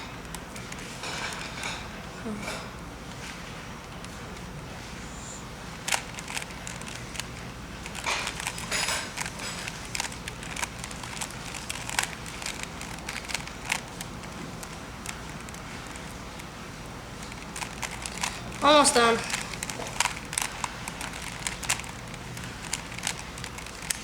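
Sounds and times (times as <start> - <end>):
puzzle cube clicking: 5.8 - 16.5, 17.2 - 24.0.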